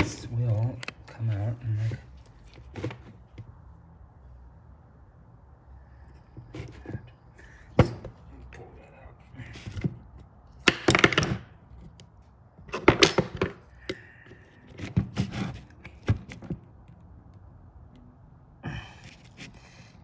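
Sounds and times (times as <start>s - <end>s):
plastic parts clicking and rattling: 10.6s - 12.0s, 12.7s - 13.9s.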